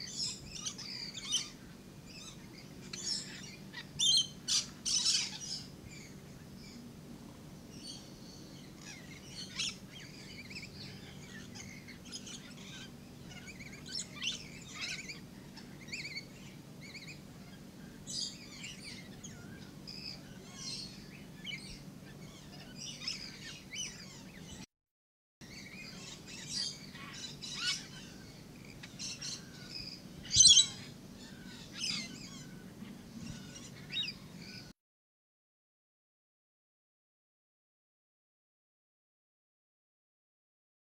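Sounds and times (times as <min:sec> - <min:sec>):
lorikeets chattering and screeching: 0:00.0 - 0:06.8, 0:07.8 - 0:24.6, 0:25.4 - 0:34.7
loud bird screech: 0:30.3 - 0:30.9.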